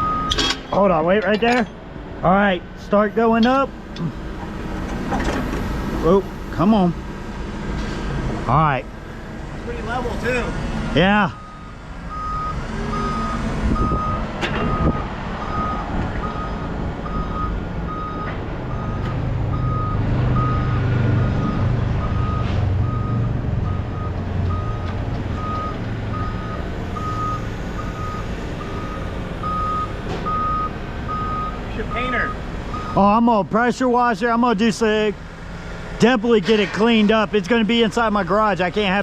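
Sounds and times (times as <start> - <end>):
truck backup alarm beeping: 0.0 - 4.7, 11.0 - 33.5
truck engine rumble: 0.0 - 39.0.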